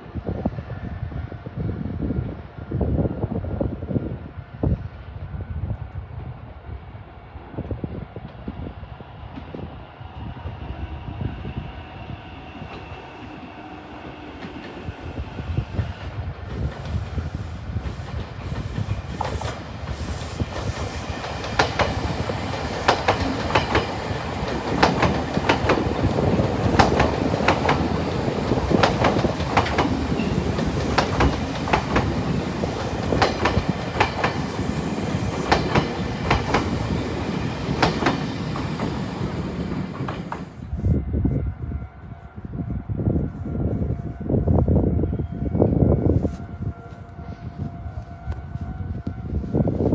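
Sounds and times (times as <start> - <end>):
train passing: 0.0 - 49.9
wheels clicking over rail joints: 20.6 - 40.4.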